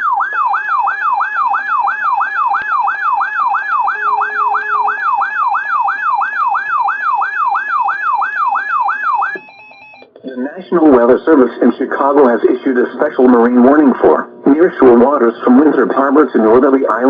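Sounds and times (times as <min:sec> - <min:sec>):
electronic alert tone sweeping down: 0:02.8 - 0:06.7.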